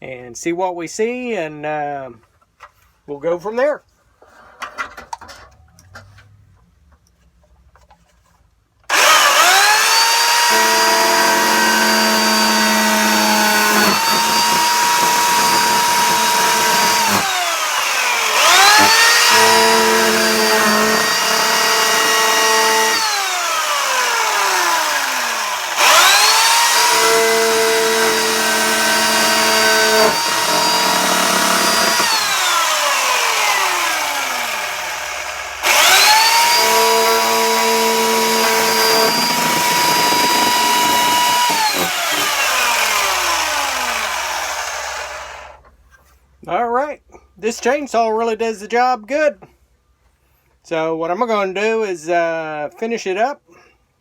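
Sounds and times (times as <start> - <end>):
small chainsaw cutting: 8.9 - 45.6.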